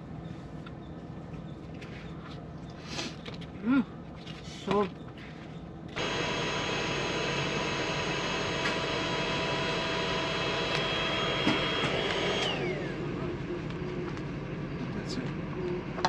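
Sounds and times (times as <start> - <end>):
small electric motor whining: 6.0 - 13.4.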